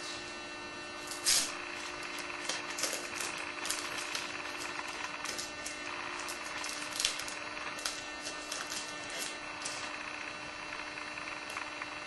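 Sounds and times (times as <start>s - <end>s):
steady low hum: 0.0s - 12.0s
trading cards rustling: 1.0s - 10.2s.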